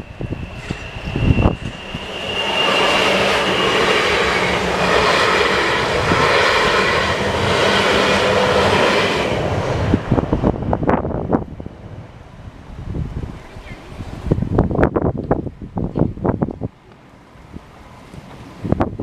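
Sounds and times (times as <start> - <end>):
train wheels rumbling on rails: 0.0 - 13.4
wind buffeting microphone: 0.0 - 19.0.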